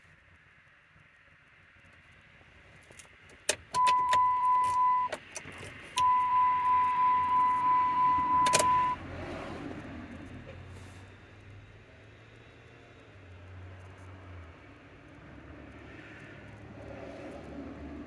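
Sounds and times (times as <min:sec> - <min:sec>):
long electronic beeps: 0:03.8 - 0:05.1, 0:06.0 - 0:09.0
sharp clicks: 0:08.4 - 0:09.0.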